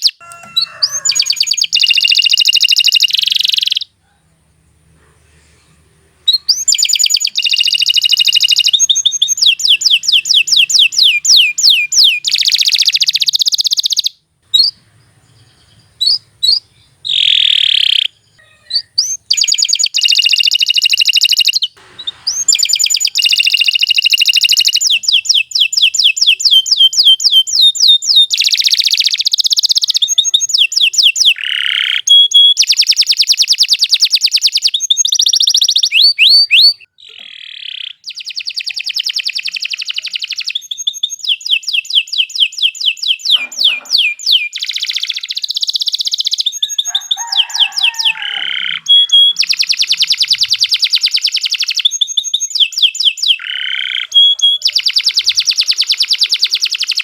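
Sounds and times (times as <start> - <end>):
canary short calls: 0.0 - 4.0, 6.3 - 14.8, 15.4 - 19.6, 43.2 - 44.5
canary trilling: 0.0 - 4.0, 6.3 - 57.0.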